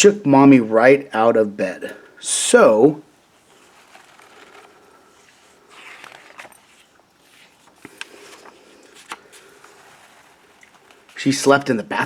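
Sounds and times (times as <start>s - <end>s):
light clicks from book handling: 3.5s - 11.2s
paper page turning: 3.5s - 11.6s.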